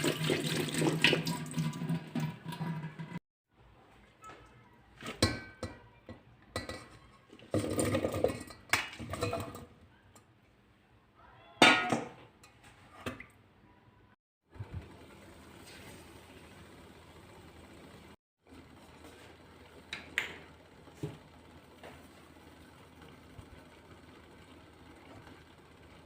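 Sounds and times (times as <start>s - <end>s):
dishes and pots clattering: 5.0s - 10.3s, 11.6s - 13.3s.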